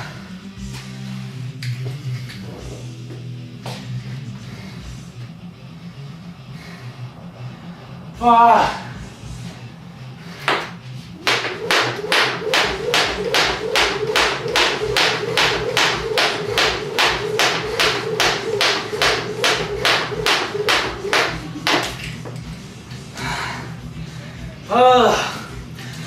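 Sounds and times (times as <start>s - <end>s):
jump rope slapping floor: 10.5s - 22.0s.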